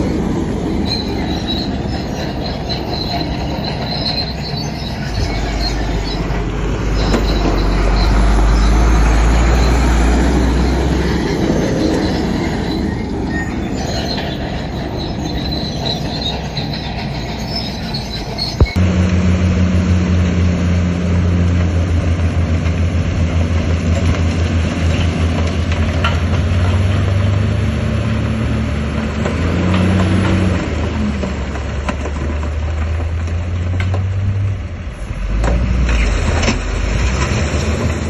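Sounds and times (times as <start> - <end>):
steel tracks clanking and squealing: 0.0 - 18.8, 21.6 - 38.0
bulldozer diesel engine: 0.0 - 38.0.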